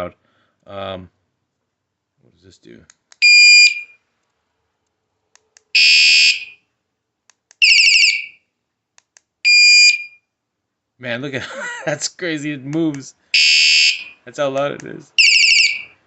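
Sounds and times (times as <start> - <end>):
alarm siren blasts: 5.8 - 6.6, 13.4 - 14.2.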